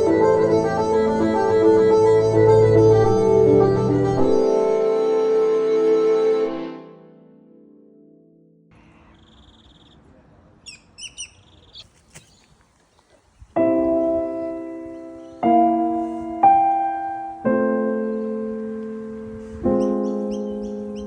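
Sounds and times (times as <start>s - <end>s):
piano chords: 0.0s - 8.7s, 13.6s - 21.0s
faint bird chirps: 8.8s - 15.4s.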